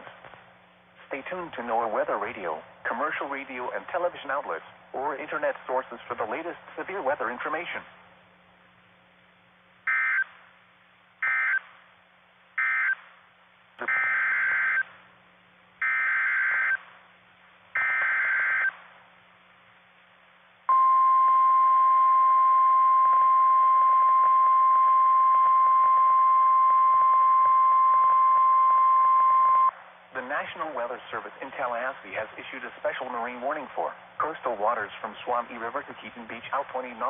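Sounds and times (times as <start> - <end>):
steady warning alarm tone: 9.9 - 10.3, 11.2 - 11.7, 12.6 - 13.1, 13.8 - 15.0, 15.8 - 16.9, 17.8 - 18.8, 20.7 - 29.7.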